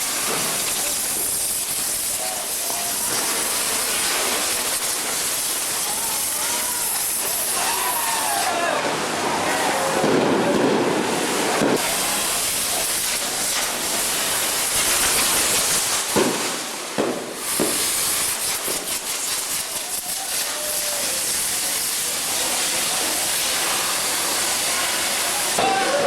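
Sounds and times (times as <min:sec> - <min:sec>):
sharp pops and crackles: 0:00.0 - 0:08.1, 0:11.5 - 0:25.2
loud steady hiss: 0:00.0 - 0:26.0.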